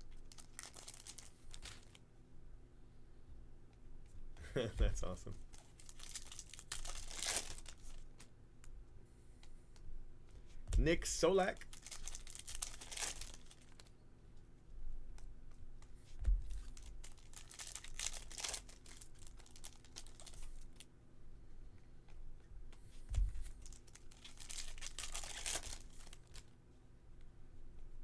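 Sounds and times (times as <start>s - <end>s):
wrappers crinkling and tearing: 0.0s - 2.0s, 5.4s - 8.3s, 11.3s - 13.9s, 16.4s - 20.9s, 23.4s - 26.5s
cards rustling and clicking: 0.4s - 2.0s, 5.4s - 8.3s, 9.4s - 13.9s, 15.2s - 20.8s, 22.9s - 26.5s
soft thumps: 4.6s - 5.0s, 16.2s - 16.6s, 23.0s - 23.5s.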